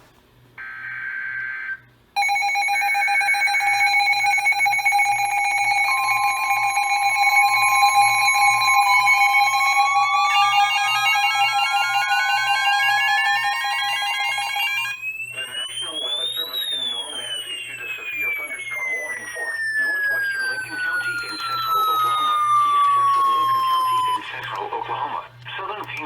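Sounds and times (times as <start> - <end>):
steady alert tone: 2.2 - 24.2
buzzing data burst: 2.2 - 24.6
upward gliding tone: 5.0 - 24.2.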